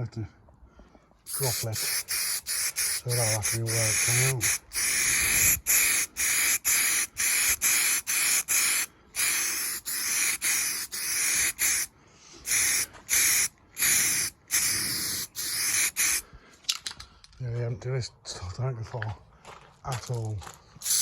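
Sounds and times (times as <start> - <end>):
paint spray gun hissing: 1.3 - 11.9, 12.5 - 16.2.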